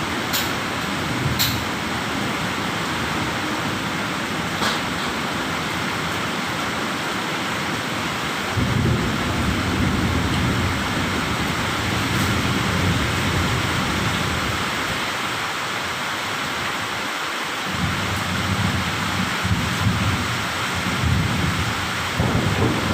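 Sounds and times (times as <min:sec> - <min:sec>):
thunder rumble: 0:00.0 - 0:05.8, 0:08.5 - 0:15.0, 0:17.7 - 0:22.9
heavy rain: 0:00.0 - 0:22.9.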